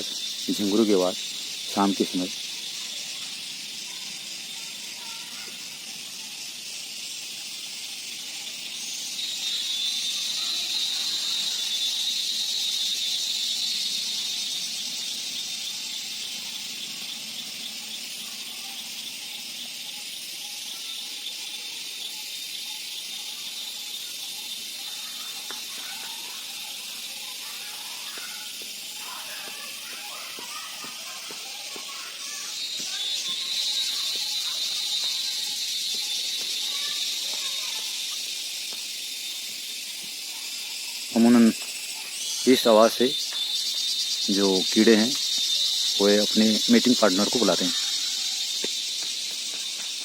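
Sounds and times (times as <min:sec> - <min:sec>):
crickets and insects trilling: 0:00.0 - 0:50.0
loud pulsing insect trill: 0:00.0 - 0:50.0.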